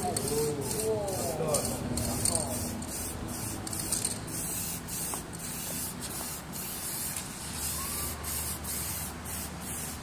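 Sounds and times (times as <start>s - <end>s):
spray paint hissing: 0.0s - 10.0s.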